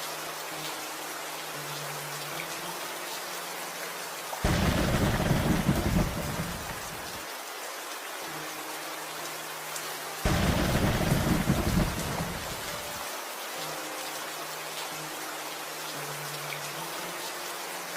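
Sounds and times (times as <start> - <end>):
steady rain: 0.0 - 17.9
thunder rumbling: 4.4 - 7.2, 10.3 - 13.0.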